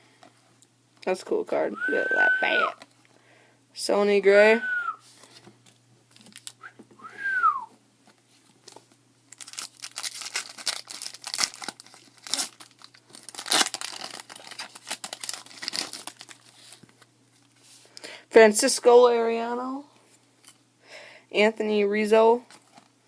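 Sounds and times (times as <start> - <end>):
foil wrapper tearing and crinkling: 9.3 - 16.8.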